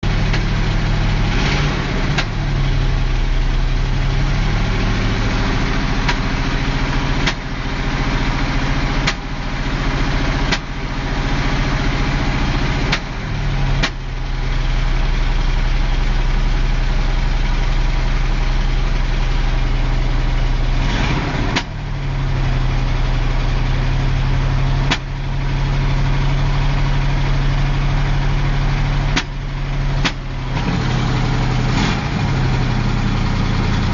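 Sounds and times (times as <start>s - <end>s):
car engine idling: 0.0s - 33.9s
sharp engine knocks: 7.2s - 7.5s, 9.0s - 9.3s, 10.5s - 10.7s, 12.9s - 13.1s, 13.8s - 14.0s, 21.5s - 21.8s, 24.8s - 25.1s, 29.1s - 29.4s, 30.0s - 30.3s.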